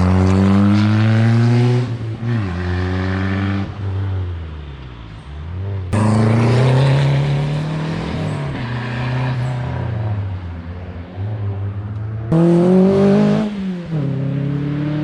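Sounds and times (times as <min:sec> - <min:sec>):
rally car engine passing: 0:05.9 - 0:15.0.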